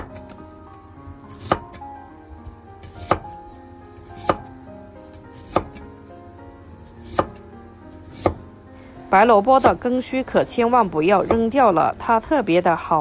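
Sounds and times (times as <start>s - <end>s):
knife chopping on cutting board: 0.0s - 0.3s, 1.3s - 1.8s, 2.8s - 3.4s, 4.0s - 4.5s, 5.1s - 5.9s, 6.9s - 7.4s, 8.0s - 8.5s, 11.2s - 11.5s
soft background music: 0.0s - 13.0s.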